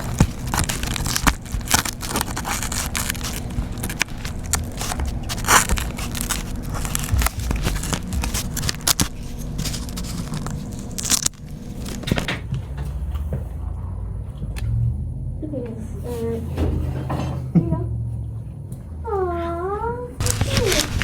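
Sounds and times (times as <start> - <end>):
crackling and scraping with clicks: 0.0 - 13.3, 20.2 - 21.0.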